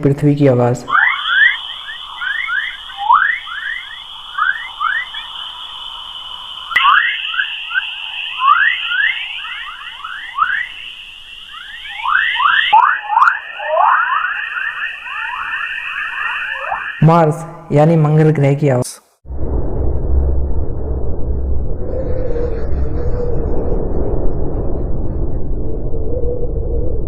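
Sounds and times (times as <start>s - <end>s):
steady high electronic tone: 0.0s - 18.2s.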